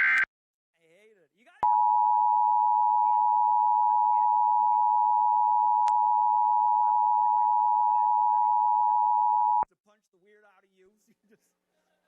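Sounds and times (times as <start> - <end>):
two-tone alarm signal: 1.6 - 9.6.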